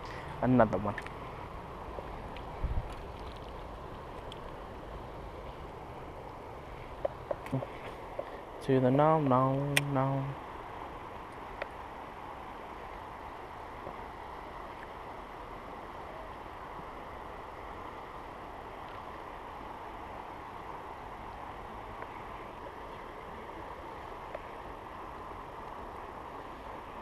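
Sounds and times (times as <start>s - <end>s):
creek water rushing: 0.0s - 27.0s.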